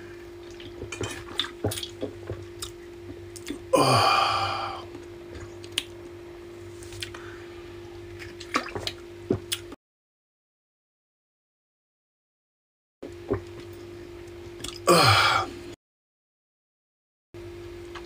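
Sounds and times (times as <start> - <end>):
steady low hum: 0.0 - 9.8, 13.0 - 15.8, 17.4 - 18.0.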